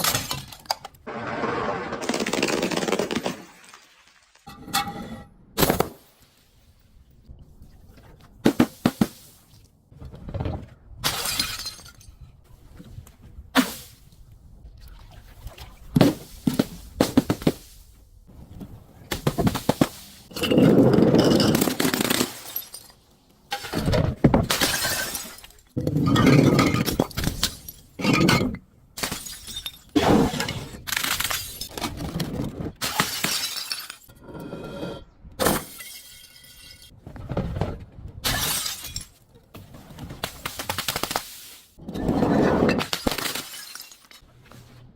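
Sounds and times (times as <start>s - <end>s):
glass bottles smashing: 11.1s - 12.2s, 20.3s - 23.9s, 24.5s - 29.9s, 32.8s - 34.2s, 35.4s - 36.9s, 38.3s - 39.2s, 42.8s - 44.2s.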